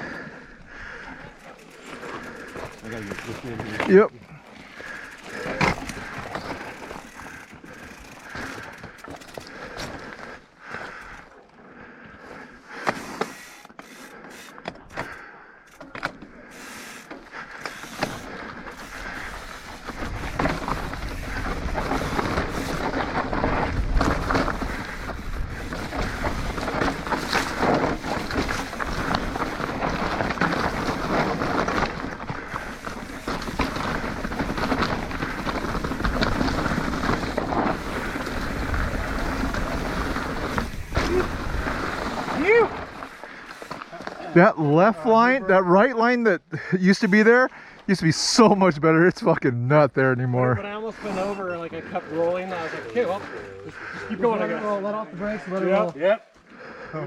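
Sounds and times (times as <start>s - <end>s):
bike knocks and rattles on rock: 5.0s - 10.0s, 17.2s - 44.2s
tyre noise and wind rush: 17.8s - 44.0s.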